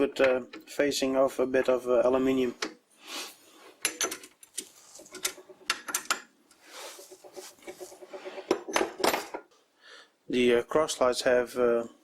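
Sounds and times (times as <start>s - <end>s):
metal clicks and knocks: 3.8s - 6.6s
light metal scraping: 6.6s - 8.7s.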